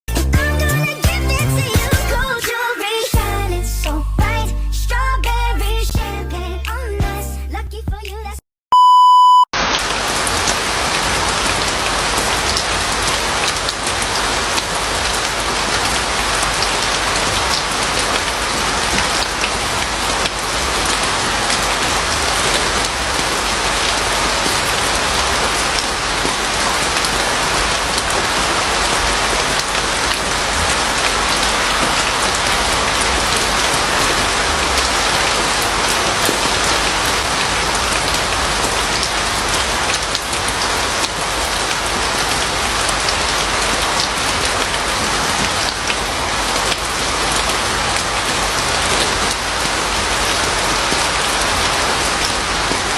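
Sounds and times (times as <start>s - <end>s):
loud electronic beep: 8.7s - 9.5s
rain pattering: 9.6s - 52.9s.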